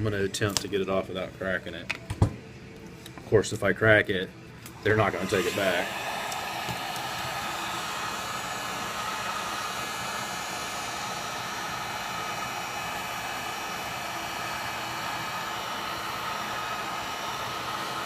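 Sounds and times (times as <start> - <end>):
hot-air blower running: 4.7 - 18.0.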